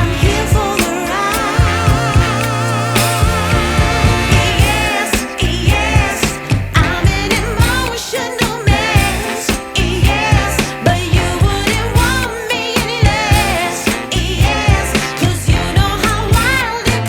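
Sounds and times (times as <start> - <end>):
pop song with sung vocal: 0.0 - 17.0.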